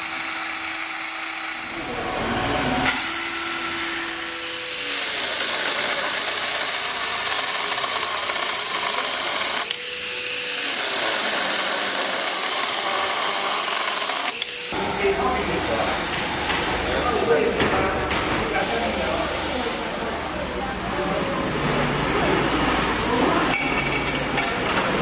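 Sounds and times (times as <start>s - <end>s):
electric saw motor humming: 0.0s - 17.3s
saw rasping through wood: 0.0s - 17.3s.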